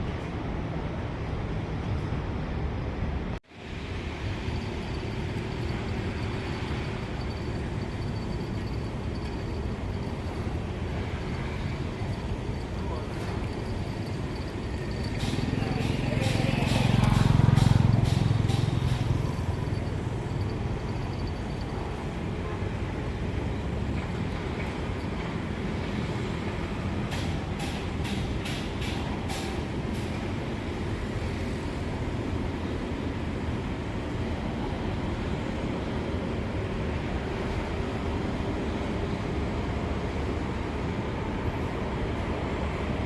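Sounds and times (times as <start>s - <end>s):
engine rumbling: 3.6s - 36.1s.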